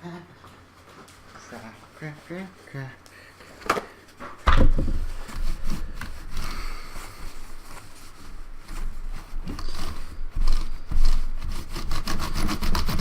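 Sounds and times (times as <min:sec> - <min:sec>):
thumps on a desk: 0:03.6 - 0:05.1
paper towels crinkling: 0:04.9 - 0:12.1.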